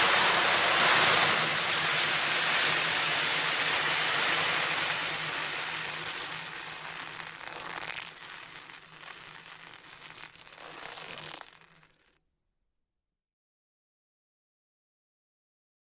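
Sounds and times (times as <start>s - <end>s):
ocean drum beads hissing: 0.0s - 12.2s.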